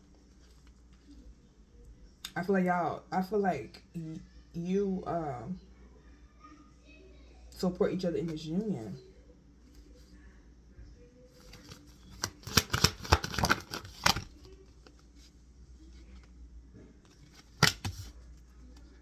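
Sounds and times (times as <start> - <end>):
cards snapping and rustling: 11.4 - 15.0, 17.1 - 19.0.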